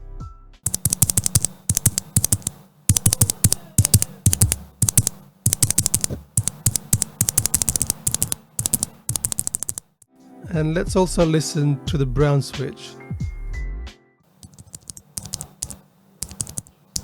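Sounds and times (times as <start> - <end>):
keyboard switch clicking: 0.7 - 10.0, 14.4 - 17.0.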